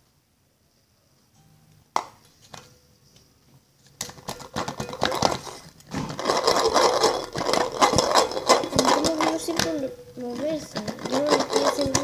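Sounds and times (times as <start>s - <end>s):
utensil stirring slime in container: 4.4s - 12.0s.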